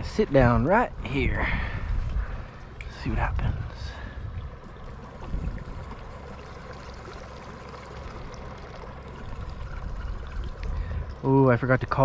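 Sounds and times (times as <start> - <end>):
small water splashes: 3.7 - 11.6
lake water lapping: 3.7 - 11.8.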